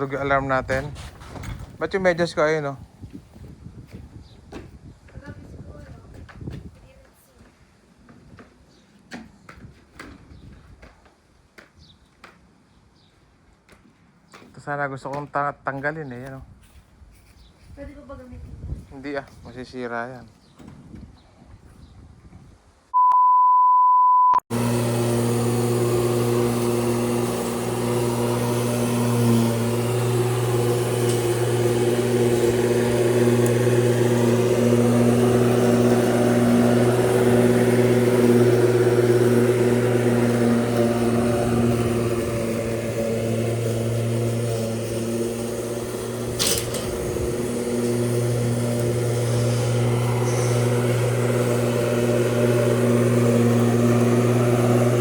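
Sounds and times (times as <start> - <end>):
loud steady beep: 23.0 - 24.4
machine motor humming: 24.5 - 55.0.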